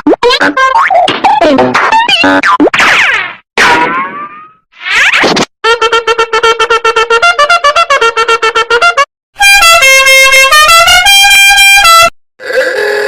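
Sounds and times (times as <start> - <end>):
brassy horn-like melody: 5.7 - 12.2.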